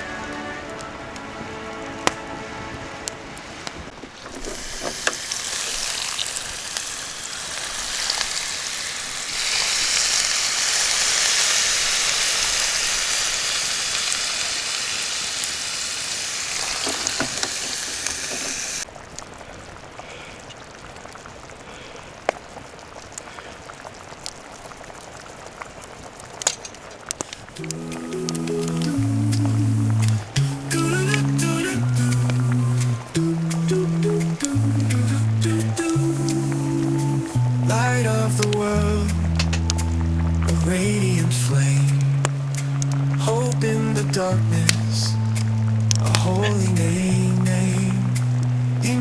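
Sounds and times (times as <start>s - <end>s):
small crackles and ticks: 3.0s - 49.0s
food sizzling in a pan: 4.4s - 18.9s.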